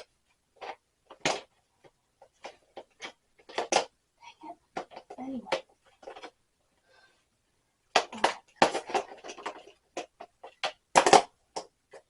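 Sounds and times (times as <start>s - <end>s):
tools clattering and knocking: 8.3s - 12.0s.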